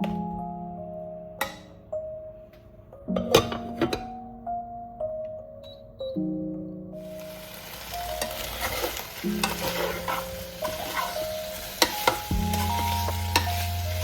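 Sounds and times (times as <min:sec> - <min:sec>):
food sizzling in a pan: 0:07.0 - 0:14.0.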